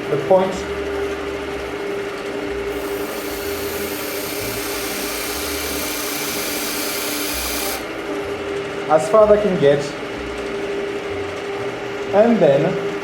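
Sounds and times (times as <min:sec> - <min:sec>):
wood lathe humming: 0:00.7 - 0:08.7
chisel cutting spinning wood: 0:02.6 - 0:08.4.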